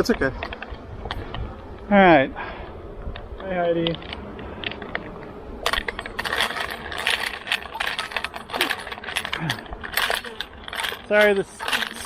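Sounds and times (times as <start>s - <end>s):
beehive equipment knocking and scraping: 2.8s - 12.0s.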